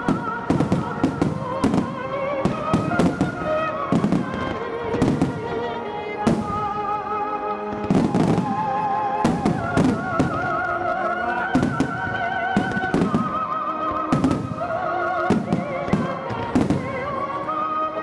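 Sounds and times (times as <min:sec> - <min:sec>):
fireworks booming: 0:00.0 - 0:05.6, 0:06.2 - 0:07.0, 0:07.7 - 0:10.7, 0:11.4 - 0:17.4
singer holding long notes: 0:00.0 - 0:18.0.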